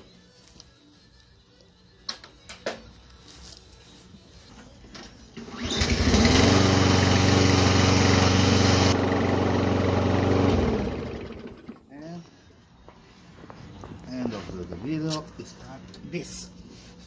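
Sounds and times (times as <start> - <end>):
lawn mower engine running: 5.4 - 11.8.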